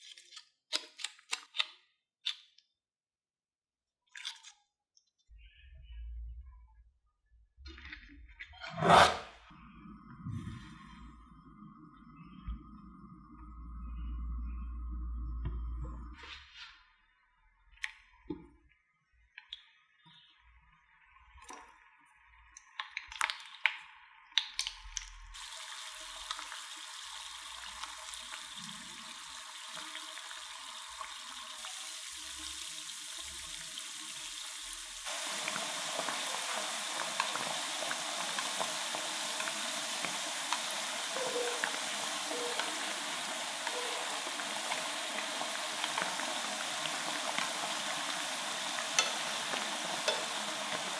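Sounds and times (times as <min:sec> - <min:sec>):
food sizzling in oil: 0:25.4 - 0:50.9.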